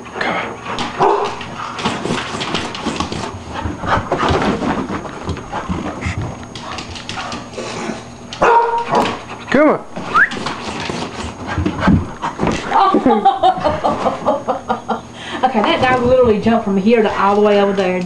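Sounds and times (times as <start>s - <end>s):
dog barking short barks: 8.4s - 9.0s.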